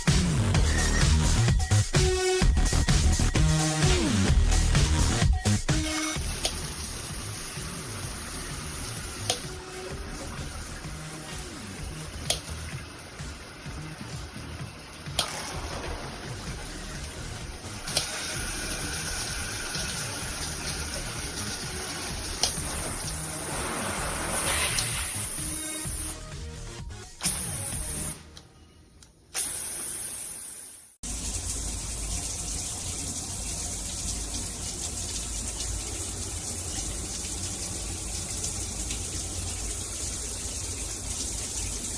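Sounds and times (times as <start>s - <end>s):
shower head spraying water: 2.6s - 26.2s, 27.2s - 28.2s.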